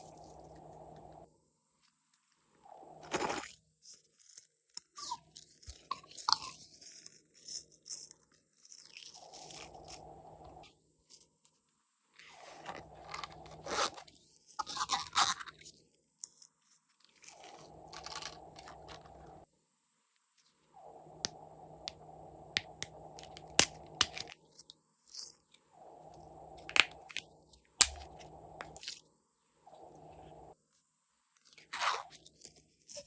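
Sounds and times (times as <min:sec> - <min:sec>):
slime crunching and clicking: 0:27.8 - 0:28.8.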